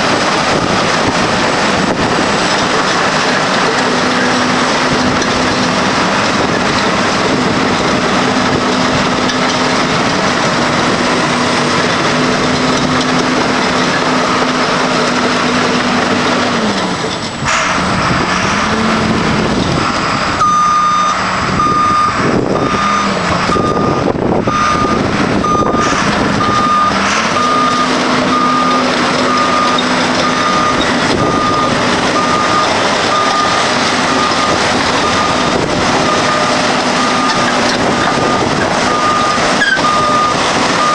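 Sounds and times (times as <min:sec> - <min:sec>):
diesel engine running: 0:00.0 - 0:40.9
reverse alarm beeping: 0:20.4 - 0:40.9.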